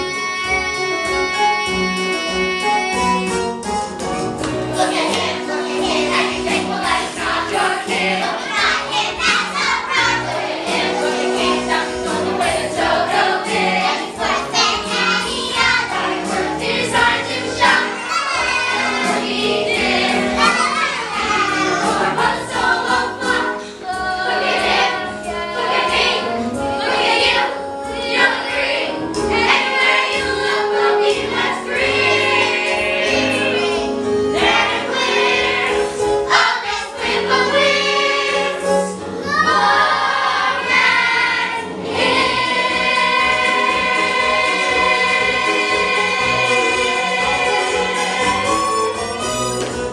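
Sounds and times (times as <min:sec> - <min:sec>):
instrumental accompaniment: 0:00.0 - 0:49.9.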